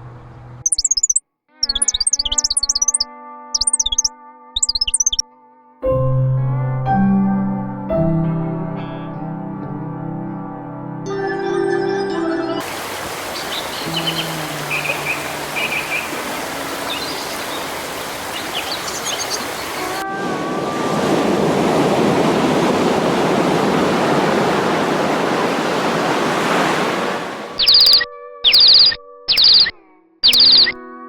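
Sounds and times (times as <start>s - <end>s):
faint bird chirps: 0.6s - 5.2s, 11.1s - 20.0s, 27.6s - 30.8s
rushing water noise: 12.6s - 28.0s.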